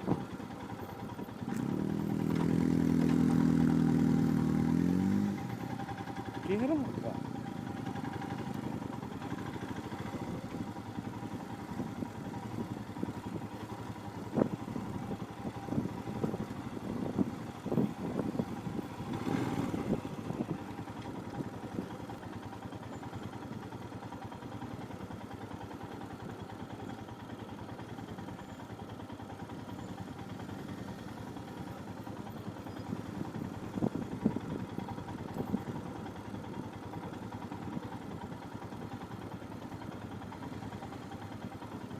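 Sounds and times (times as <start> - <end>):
motorcycle engine running: 0.0 - 41.9
motorcycle knocks and rattles: 1.4 - 4.0.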